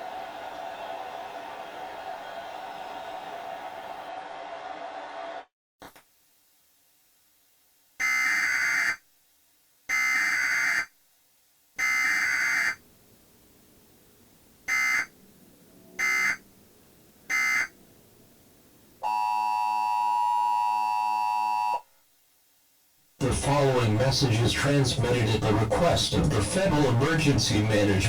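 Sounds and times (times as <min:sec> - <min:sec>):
buzzing data bursts: 0:11.8 - 0:12.8, 0:14.7 - 0:15.1, 0:16.0 - 0:16.4, 0:17.3 - 0:17.7.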